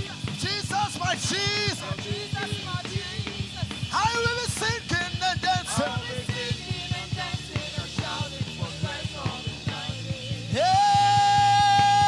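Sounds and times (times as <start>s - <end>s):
gospel band playing: 0.0s - 12.0s
steady drum beat: 0.0s - 12.0s
person singing: 5.4s - 12.0s.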